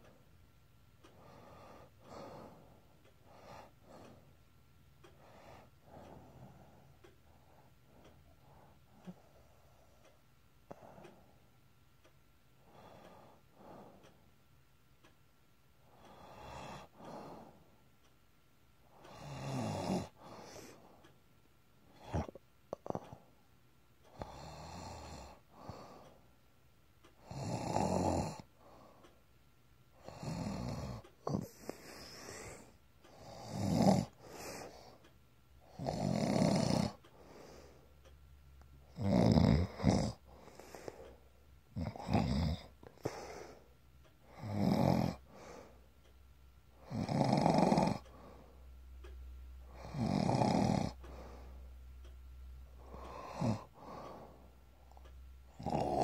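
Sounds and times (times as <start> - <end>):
person snoring: 16.0 - 17.5, 18.9 - 20.9, 21.9 - 23.2, 24.1 - 26.0, 27.2 - 28.8, 30.0 - 35.0, 35.6 - 37.7, 38.8 - 41.2, 41.8 - 43.6, 44.3 - 45.7, 46.8 - 48.5, 49.7 - 51.5, 52.8 - 56.0.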